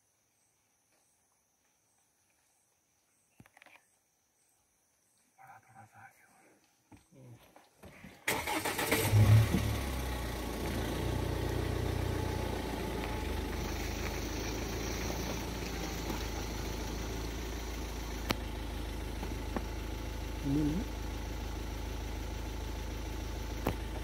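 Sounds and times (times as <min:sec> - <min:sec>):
vehicle engine idling: 0:08.0 - 0:24.0.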